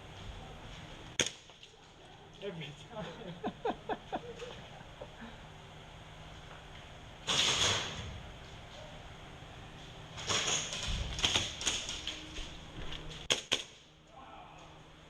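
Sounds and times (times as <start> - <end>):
sharp airsoft shots and clicks: 1.2 - 1.6, 7.2 - 8.0, 13.3 - 13.9.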